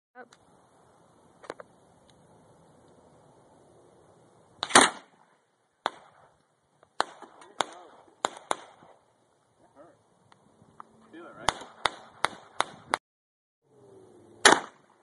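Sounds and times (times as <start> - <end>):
gunshots: 4.6 - 5.1, 7.0 - 9.0, 11.4 - 13.0, 14.4 - 14.9.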